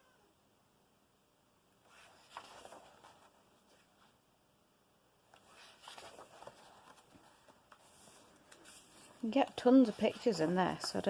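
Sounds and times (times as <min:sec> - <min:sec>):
paper pages rustling: 0:01.9 - 0:04.2, 0:05.3 - 0:11.0.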